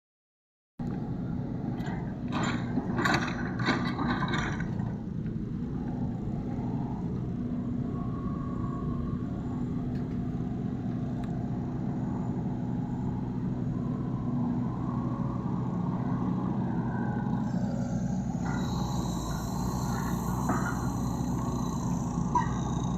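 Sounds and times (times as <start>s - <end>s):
excavator engine running: 0.8s - 22.9s
scraping clanking strokes: 18.3s - 22.9s.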